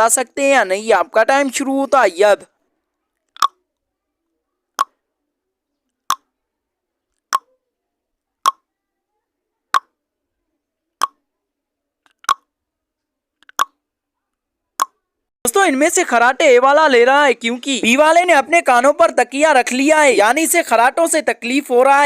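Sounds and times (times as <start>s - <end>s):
timer ticking: 12.2s - 12.4s.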